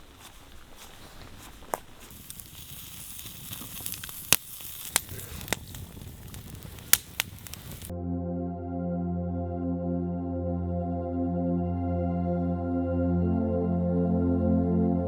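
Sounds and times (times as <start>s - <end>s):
steady rain hiss: 0.0s - 7.9s
ambient music with held tones: 7.9s - 15.0s.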